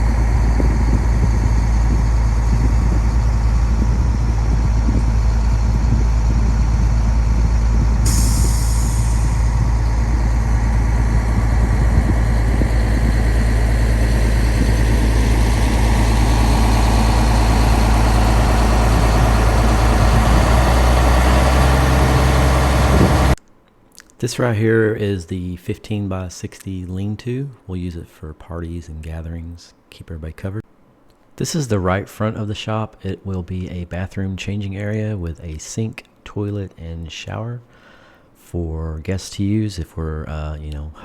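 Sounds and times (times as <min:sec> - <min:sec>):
diesel truck engine droning: 0:00.0 - 0:23.4.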